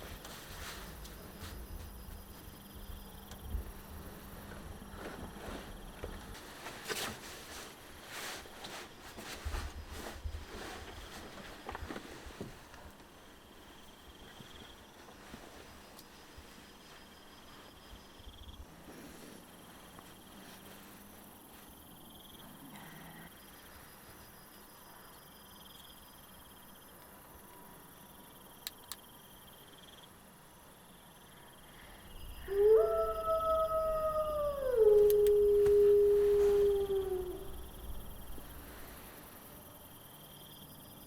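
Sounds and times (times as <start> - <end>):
night insects chirping: 0.0 - 6.8, 13.1 - 41.0
canine howl: 32.3 - 38.2.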